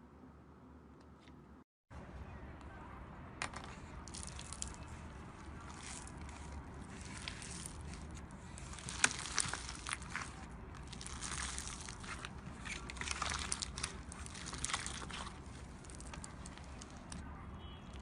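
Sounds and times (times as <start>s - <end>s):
slime crackling and popping: 4.0s - 17.2s.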